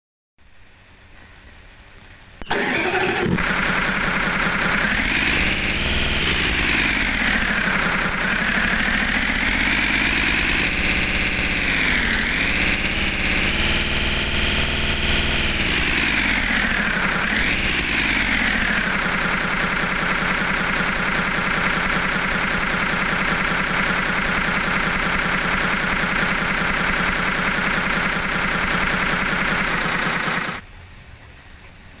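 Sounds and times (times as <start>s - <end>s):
bus diesel engine revving and idling: 2.4s - 30.6s.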